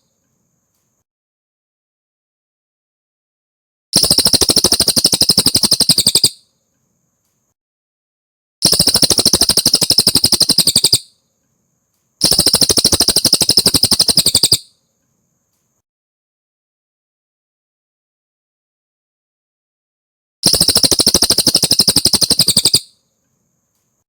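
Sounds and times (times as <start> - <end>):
songbird high trills: 4.4 - 6.4, 8.7 - 11.1, 12.2 - 14.7, 20.6 - 22.9.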